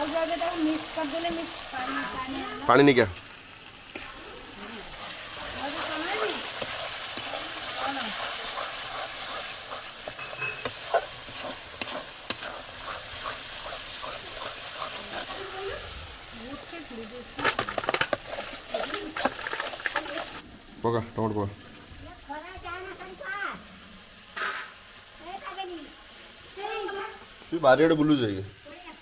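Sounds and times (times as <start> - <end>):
spices sizzling in a pan: 0.0 - 29.0
spoon scraping and knocking pan: 5.0 - 15.7, 17.4 - 20.4.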